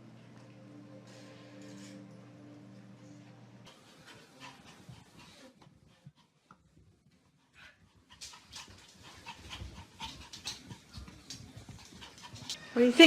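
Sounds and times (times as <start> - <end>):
dog panting: 3.6 - 12.6.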